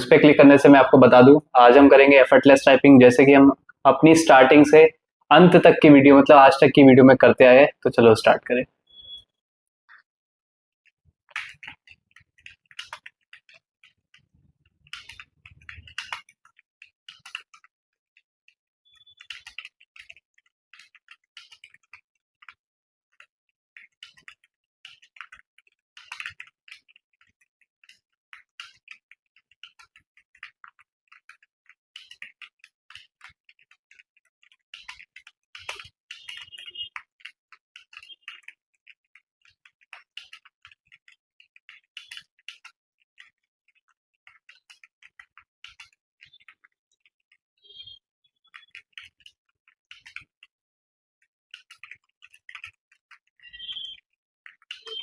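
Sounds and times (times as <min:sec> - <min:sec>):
fast keyboard typing: 0:00.0 - 0:09.1, 0:11.3 - 0:17.7, 0:18.8 - 0:50.5, 0:51.5 - 0:55.0.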